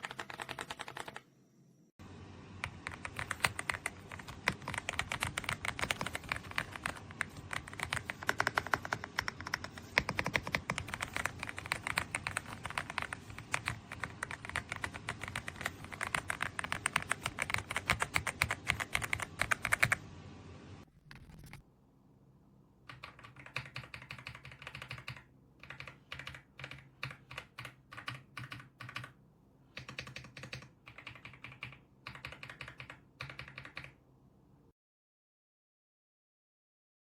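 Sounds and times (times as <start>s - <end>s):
mechanical keyboard typing: 0.0s - 1.3s, 2.6s - 20.0s, 22.9s - 29.2s, 29.8s - 34.0s.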